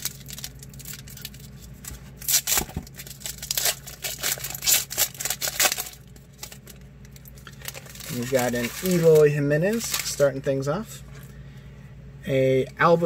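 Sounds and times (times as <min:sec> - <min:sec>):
wrapper tearing and crinkling: 0:00.0 - 0:10.3.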